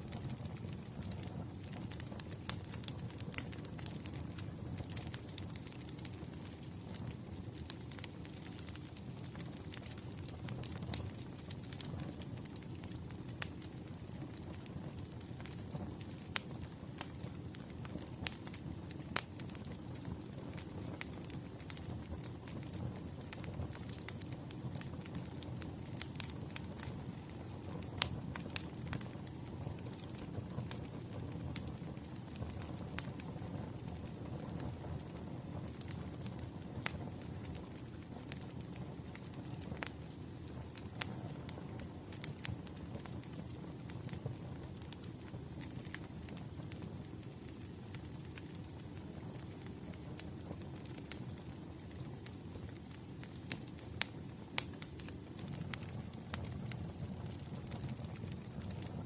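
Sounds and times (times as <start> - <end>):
fire crackling and popping: 0.0 - 59.0
low rumble of flames: 0.0 - 59.0.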